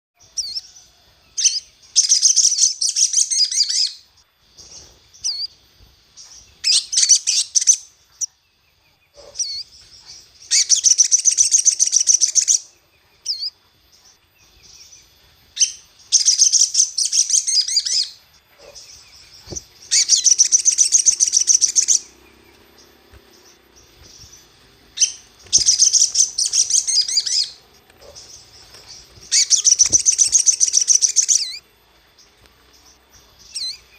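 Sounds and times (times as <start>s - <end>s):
bird high-pitched trilling: 0.2s - 0.7s, 1.4s - 4.0s, 6.6s - 8.4s, 9.2s - 13.6s, 15.6s - 22.5s, 23.3s - 31.7s, 33.3s - 33.9s
faint bird chirps: 0.2s - 33.9s.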